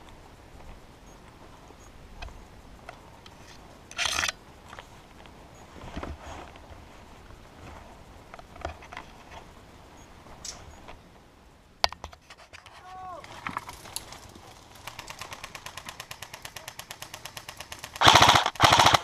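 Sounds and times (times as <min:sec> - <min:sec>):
clothing and brush rustling: 0:04.8 - 0:08.2.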